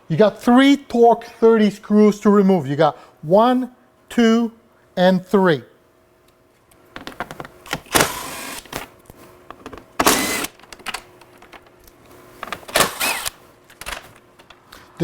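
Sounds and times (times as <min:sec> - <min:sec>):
impact drill running: 0:07.9 - 0:08.7, 0:10.0 - 0:10.6, 0:12.7 - 0:13.4
handling clicks and rattles: 0:10.6 - 0:12.8.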